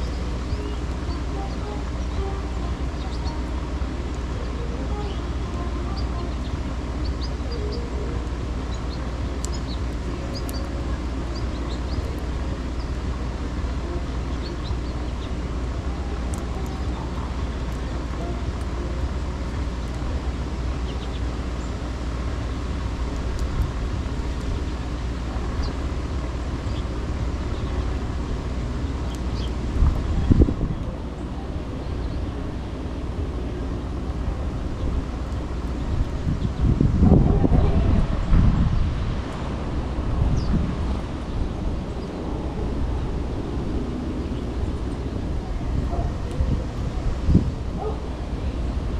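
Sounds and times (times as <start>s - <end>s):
city traffic rumble: 0.0s - 48.9s
songbirds chirping: 0.0s - 48.9s
wind: 0.0s - 48.9s.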